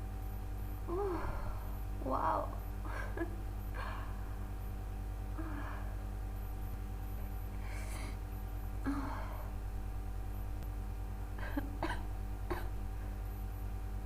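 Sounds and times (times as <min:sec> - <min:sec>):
steady low hum: 0:00.0 - 0:14.0
woman breathing and sniffing: 0:07.6 - 0:08.3.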